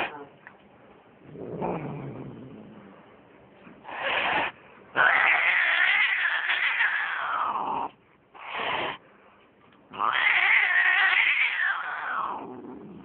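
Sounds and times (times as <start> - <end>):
cat yowling: 5.0 - 7.6, 10.0 - 12.6.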